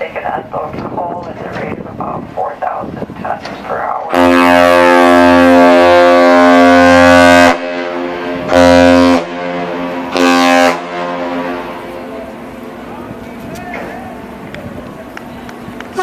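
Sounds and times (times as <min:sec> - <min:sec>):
loud low ship horn blasts: 0:03.8 - 0:16.0.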